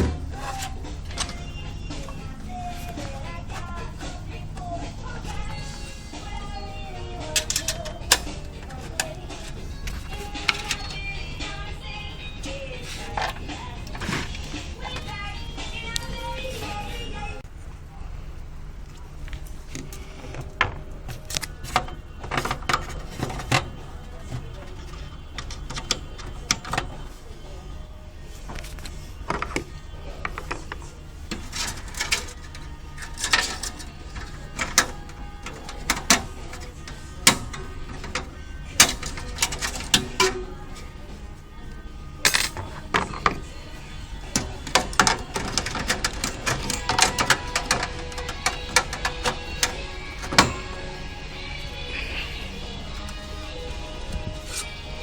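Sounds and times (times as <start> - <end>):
steady low hum: 0.0 - 55.0
computer parts clicking and knocking: 7.2 - 11.1, 19.8 - 27.2, 28.5 - 40.9, 42.1 - 51.2.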